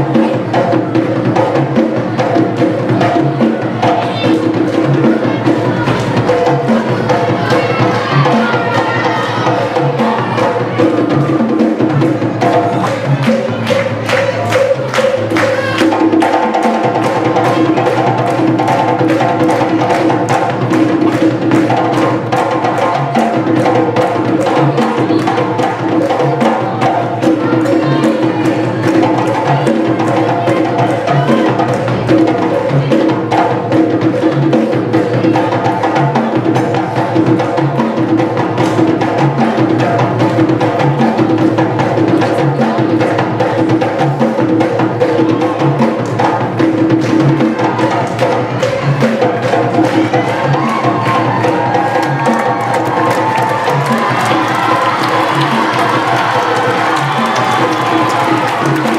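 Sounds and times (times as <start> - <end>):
dance music with fast beat: 41.6 - 58.9.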